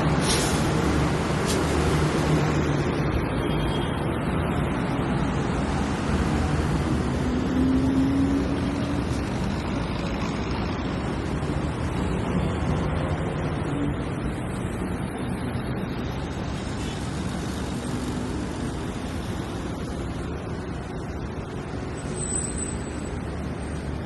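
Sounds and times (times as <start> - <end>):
busy road traffic: 0.0 - 24.0.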